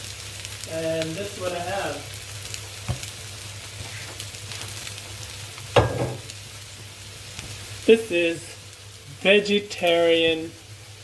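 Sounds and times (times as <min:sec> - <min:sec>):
noodles sizzling in a wok: 0:00.0 - 0:11.0
knock: 0:05.8 - 0:06.2.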